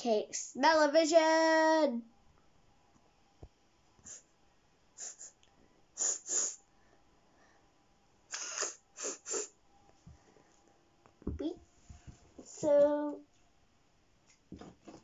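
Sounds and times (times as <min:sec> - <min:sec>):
child sniffing: 0:04.0 - 0:04.3, 0:05.0 - 0:05.4, 0:06.0 - 0:06.7, 0:08.3 - 0:09.6.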